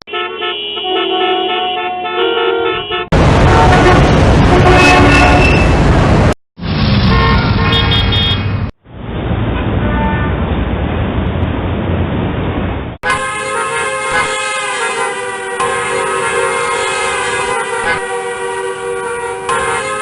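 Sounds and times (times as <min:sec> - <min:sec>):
street traffic: 0:00.0 - 0:20.0
car horns honking: 0:00.1 - 0:05.8, 0:07.0 - 0:08.6, 0:13.0 - 0:20.0.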